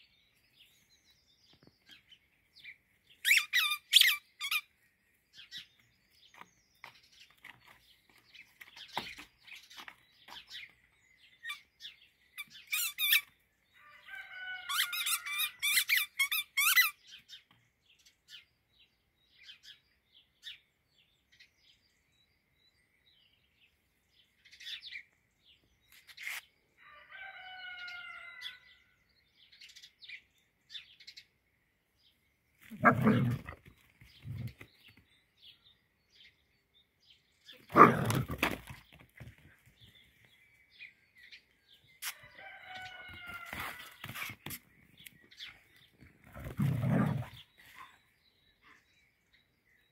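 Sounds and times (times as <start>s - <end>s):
squeaky toy ball squeaking: 3.2s - 4.6s, 12.7s - 13.3s, 14.7s - 17.0s.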